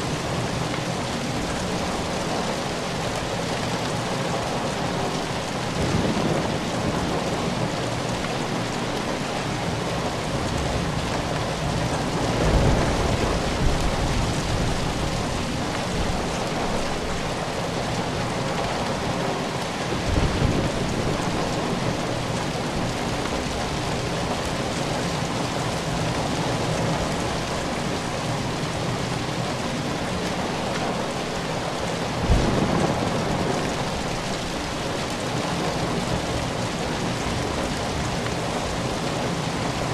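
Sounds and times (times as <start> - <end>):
steady rain falling: 0.0 - 39.9
thunder rumbles: 4.8 - 24.3, 31.9 - 39.9.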